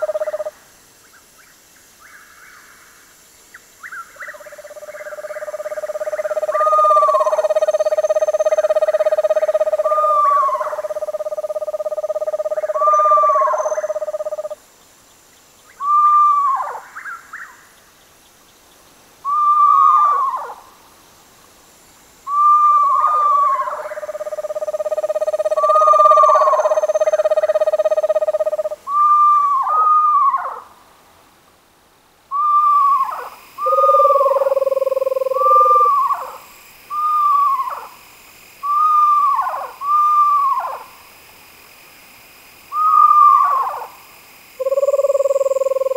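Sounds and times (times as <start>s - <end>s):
owl steady trills: 0.0s - 0.5s, 3.8s - 14.6s, 22.3s - 30.7s, 32.3s - 38.0s, 38.6s - 40.9s, 42.7s - 44.0s, 44.6s - 45.9s
screech owls calling: 3.8s - 14.6s, 15.8s - 17.4s, 19.2s - 20.6s, 22.3s - 30.7s, 32.3s - 37.9s, 38.6s - 40.9s, 42.7s - 43.9s, 44.6s - 45.9s.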